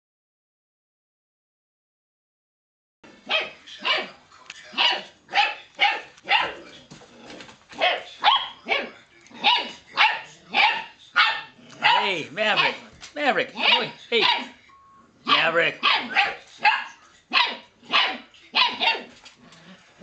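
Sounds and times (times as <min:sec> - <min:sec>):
puppies yapping: 0:03.2 - 0:12.9, 0:13.5 - 0:14.6, 0:15.3 - 0:19.8.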